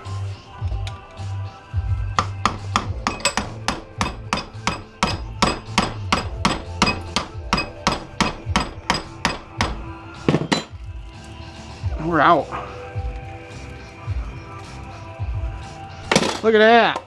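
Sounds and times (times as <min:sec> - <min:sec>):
hammer blows on metal transformer: 0:02.2 - 0:09.8.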